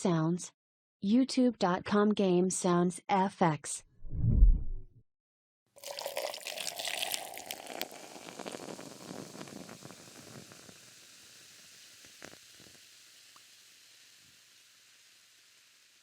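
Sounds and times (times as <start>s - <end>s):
soda pouring: 5.8s - 15.9s
soda bubbles fizzing: 5.8s - 16.0s.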